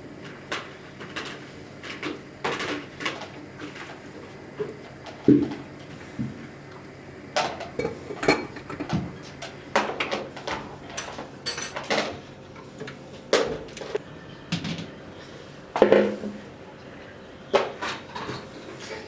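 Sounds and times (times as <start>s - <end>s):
dishes and utensils clinking: 7.4s - 12.2s.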